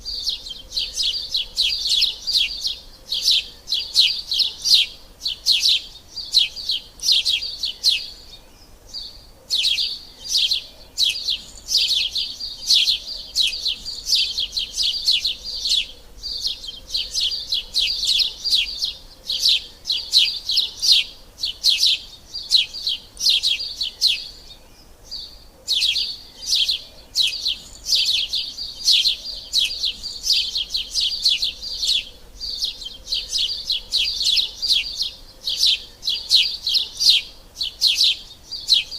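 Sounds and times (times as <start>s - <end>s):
sparrows chirping: 0.0s - 38.9s.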